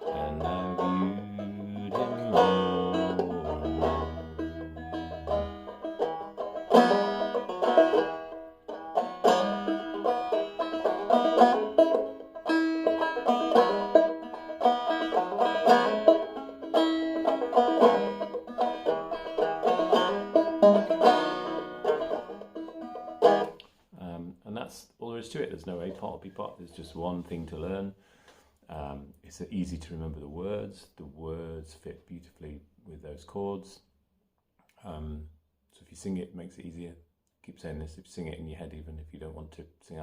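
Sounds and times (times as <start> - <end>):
banjo plucking: 0.0 - 23.7, 25.0 - 27.8.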